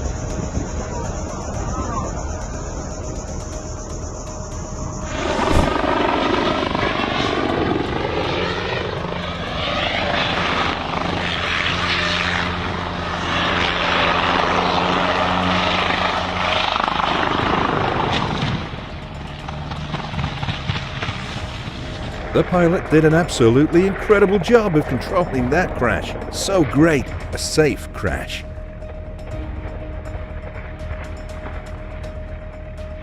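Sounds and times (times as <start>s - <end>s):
helicopter rotor and engine: 0.0s - 33.0s.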